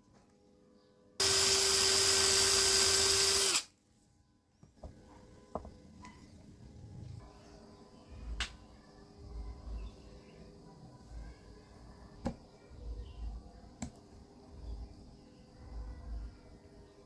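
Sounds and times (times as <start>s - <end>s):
small electric motor whining: 1.2s - 3.7s.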